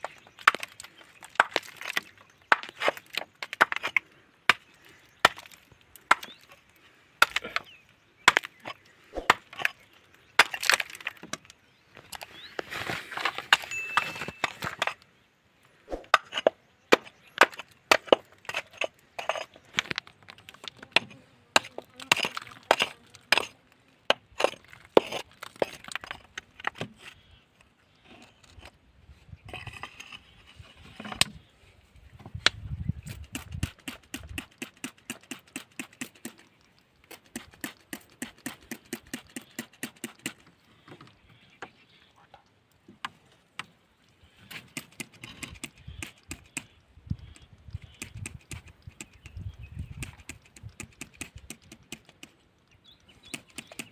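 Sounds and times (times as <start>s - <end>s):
hand tool striking rock: 0.4s - 6.4s, 7.2s - 7.7s, 8.3s - 9.8s, 10.4s - 11.1s, 15.9s - 20.1s, 20.9s - 26.2s.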